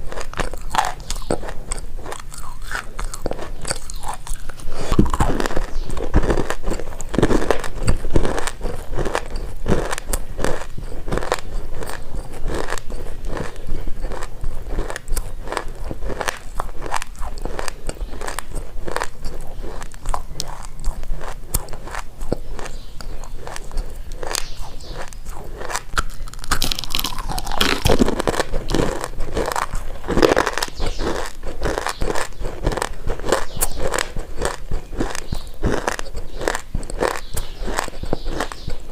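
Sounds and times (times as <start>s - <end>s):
chewing dry brittle crunches: 0.0s - 38.9s.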